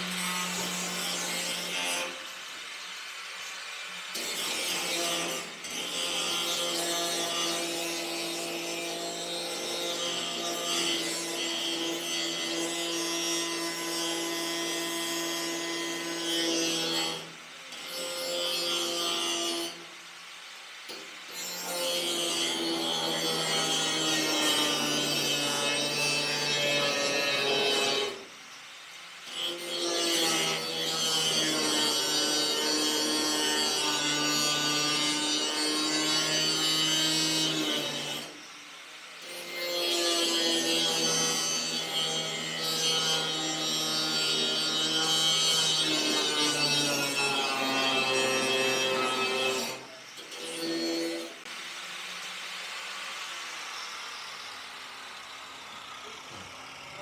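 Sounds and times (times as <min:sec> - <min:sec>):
angle grinder cutting sheet metal: 0:00.0 - 0:19.9, 0:20.9 - 0:28.3, 0:29.2 - 0:57.0
power tool motor whine: 0:51.4 - 0:57.0.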